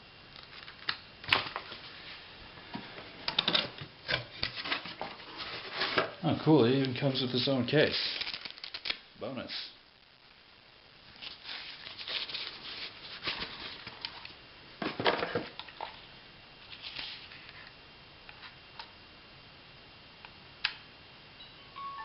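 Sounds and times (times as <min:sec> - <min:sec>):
packaging rustling and crinkling: 0:00.4 - 0:09.1, 0:11.1 - 0:16.0, 0:16.6 - 0:17.7
electronic start-up chime: 0:21.4 - 0:22.0.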